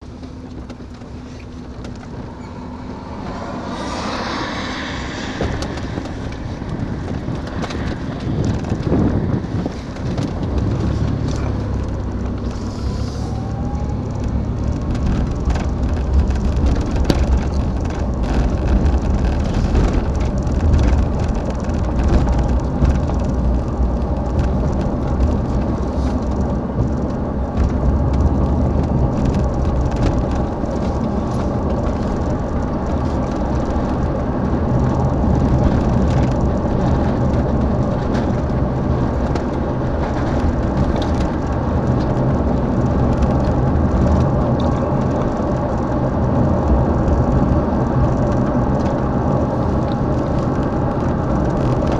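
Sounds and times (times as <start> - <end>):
engine rumbling: 0.0 - 51.9.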